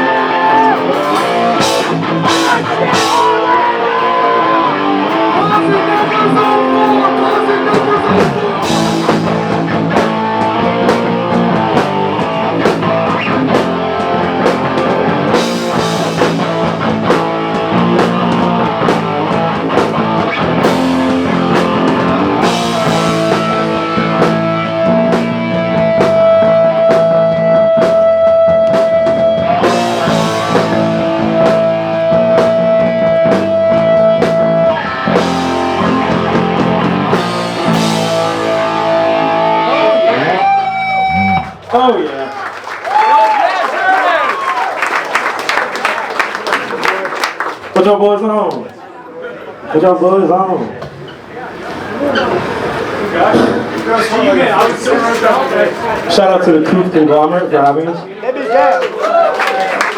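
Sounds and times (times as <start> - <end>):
rock band playing: 0.0 - 41.8.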